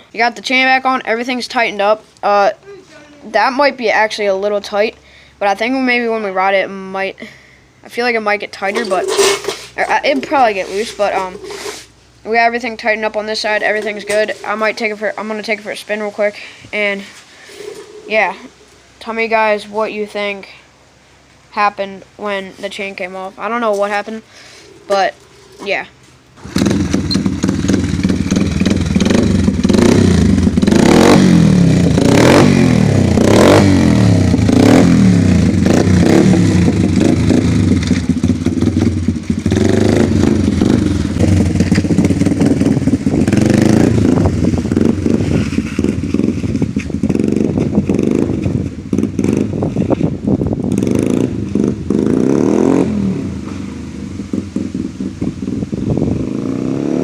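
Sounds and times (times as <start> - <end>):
rattling: 8.6 - 11.9
dirt bike engine revving: 26.4 - 57.0.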